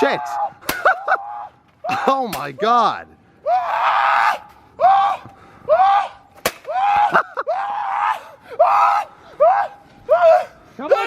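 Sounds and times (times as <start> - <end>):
man screaming: 3.4 - 11.0
sharp impact crack: 6.4 - 6.8.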